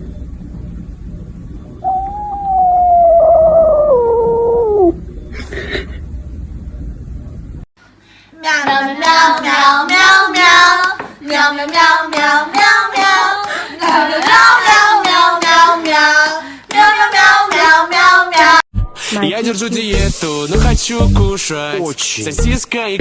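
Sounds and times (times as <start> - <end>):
high voice singing: 1.8 - 5.0, 19.2 - 21.3.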